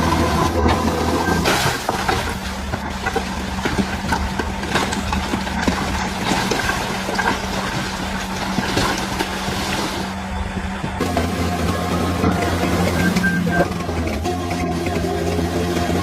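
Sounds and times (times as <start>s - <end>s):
bulldozer diesel engine humming: 0.0s - 16.0s.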